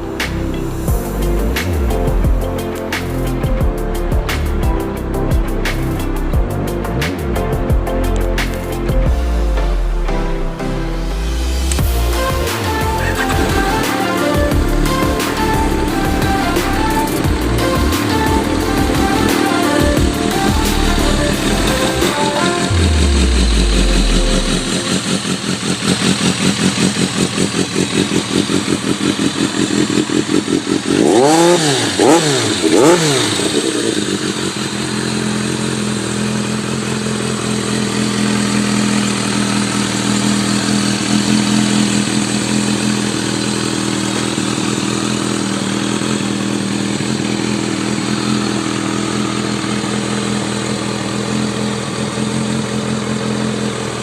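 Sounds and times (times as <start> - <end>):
motorcycle engine idling and revving: 0.0 - 54.0.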